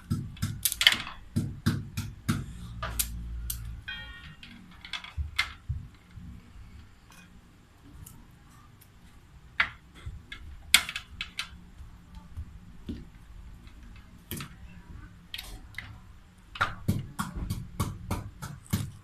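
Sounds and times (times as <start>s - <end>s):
low background hum: 0.0s - 19.0s.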